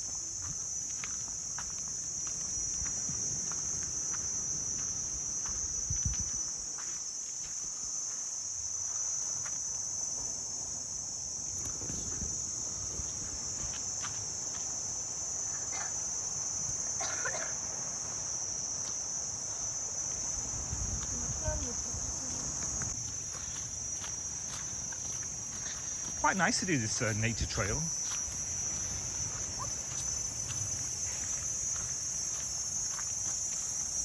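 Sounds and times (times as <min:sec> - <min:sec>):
footsteps on muddy trail: 0:00.0 - 0:09.6, 0:20.8 - 0:34.0
insect chorus drone: 0:00.0 - 0:34.0.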